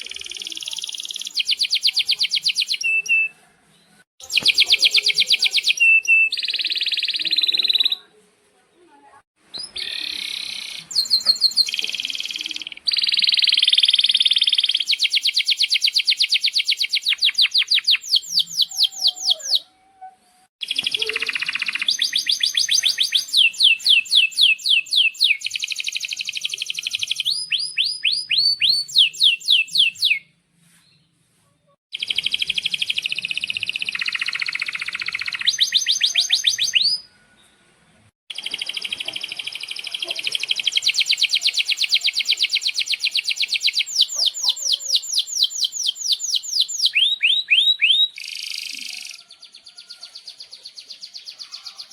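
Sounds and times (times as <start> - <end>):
canary singing trills: 0.0 - 3.3, 4.2 - 8.0, 9.5 - 30.3, 31.9 - 37.2, 38.3 - 51.9.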